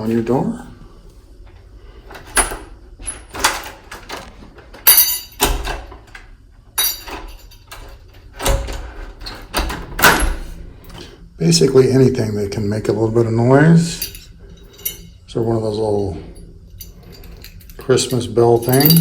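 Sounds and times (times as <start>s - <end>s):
door bell jingling: 16.7s - 19.0s.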